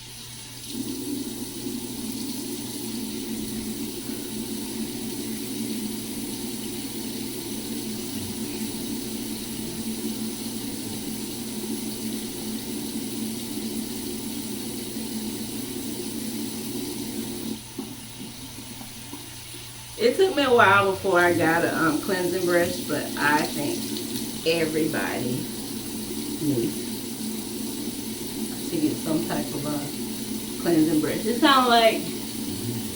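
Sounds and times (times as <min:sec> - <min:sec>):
cleansing brush buzzing: 0:07.7 - 0:11.8, 0:20.0 - 0:32.9.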